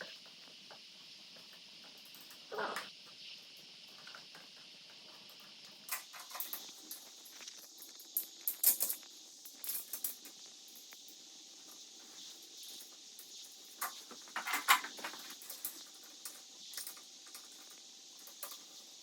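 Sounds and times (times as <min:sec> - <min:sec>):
faint steady hiss: 0:00.0 - 0:19.0
hand tools clicking and knocking: 0:13.8 - 0:15.8.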